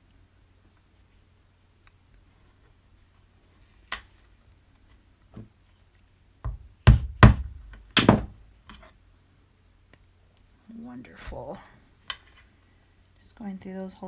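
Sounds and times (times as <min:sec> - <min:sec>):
mallet striking leather punch: 0:06.5 - 0:08.4.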